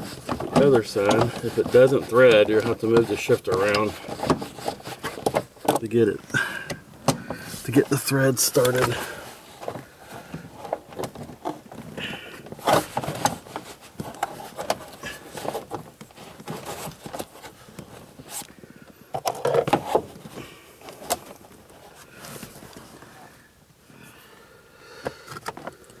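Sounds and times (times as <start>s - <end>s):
flurry of knocks: 0.0s - 5.8s
tool clicking on metal parts: 0.6s - 5.8s.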